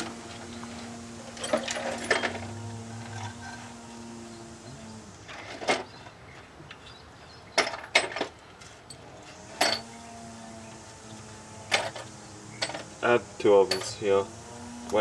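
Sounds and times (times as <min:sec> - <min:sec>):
metallic clinks and knocks of tools: 0:13.7 - 0:14.0.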